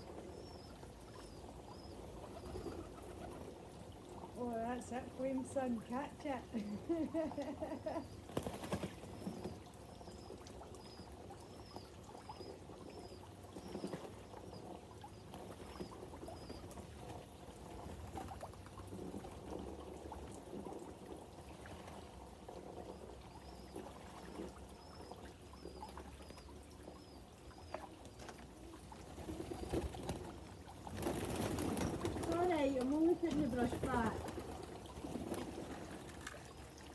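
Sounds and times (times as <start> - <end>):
pigeons moving about: 8.0 - 9.6, 28.1 - 36.6.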